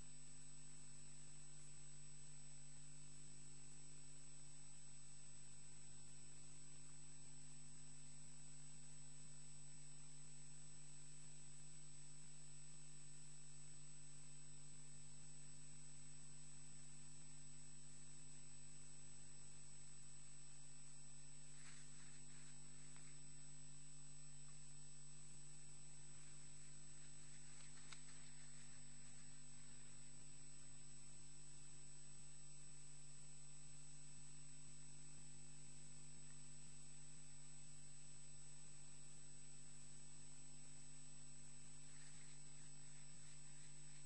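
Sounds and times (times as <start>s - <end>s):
electrical hum: 0.0s - 44.0s
thin high whine: 19.8s - 31.8s, 41.0s - 44.0s.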